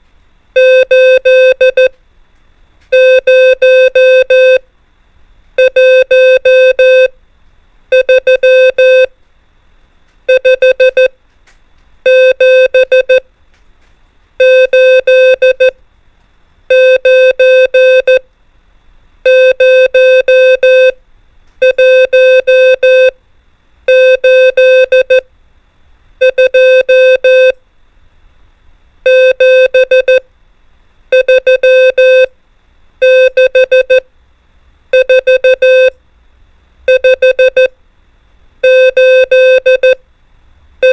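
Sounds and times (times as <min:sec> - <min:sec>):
morse code beeps: 0:00.6 - 0:02.0, 0:02.9 - 0:04.6, 0:05.6 - 0:07.1, 0:07.9 - 0:09.2, 0:10.3 - 0:11.2, 0:12.1 - 0:13.2, 0:14.4 - 0:15.8, 0:16.7 - 0:18.2, 0:19.3 - 0:21.0, 0:21.6 - 0:23.2, 0:23.9 - 0:25.2, 0:26.2 - 0:27.6, 0:29.1 - 0:30.2, 0:31.1 - 0:32.3, 0:33.0 - 0:34.0, 0:34.9 - 0:36.0, 0:36.9 - 0:37.7, 0:38.6 - 0:40.0.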